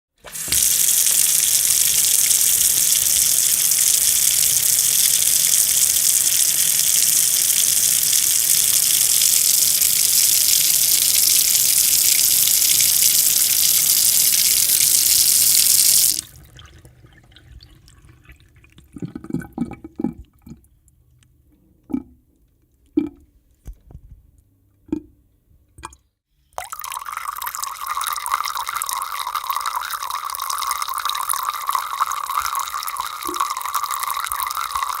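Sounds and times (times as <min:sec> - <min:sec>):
water tap running: 0:00.2 - 0:17.5, 0:26.7 - 0:35.0
water drips: 0:26.6 - 0:35.0.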